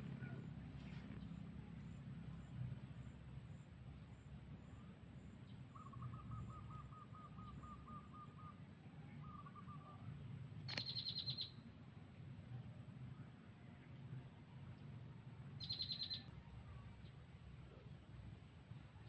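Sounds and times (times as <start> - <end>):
birds calling: 5.7 - 8.6, 10.7 - 11.6, 15.6 - 16.2
fast high bird twitter: 10.7 - 11.6, 15.6 - 16.3.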